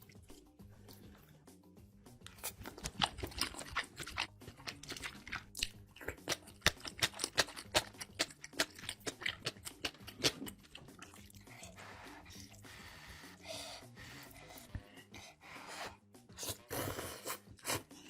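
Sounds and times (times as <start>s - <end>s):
person chewing and biting food: 2.3s - 12.6s.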